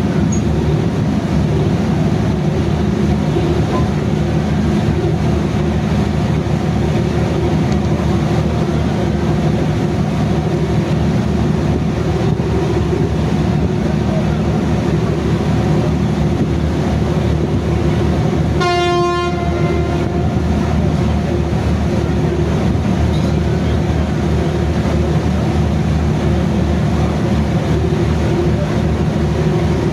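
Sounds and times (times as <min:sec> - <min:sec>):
heavy vehicle low rumble: 0:00.0 - 0:29.9
vehicle horn blast: 0:18.6 - 0:20.2.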